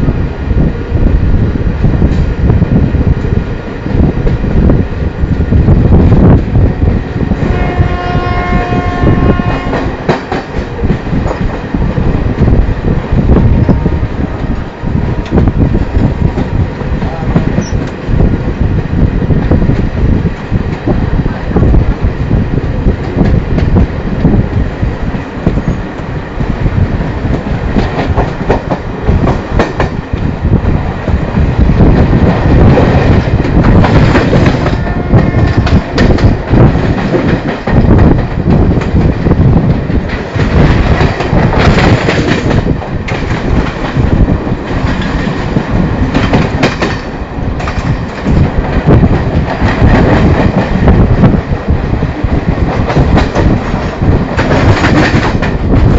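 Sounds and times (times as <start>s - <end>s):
train wheels clattering: 8.5s - 12.6s, 27.2s - 51.4s, 52.2s - 55.9s.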